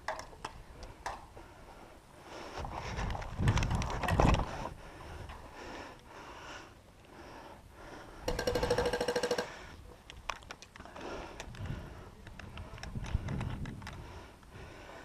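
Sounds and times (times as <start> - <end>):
airsoft gun full-auto burst: 8.3 - 9.6.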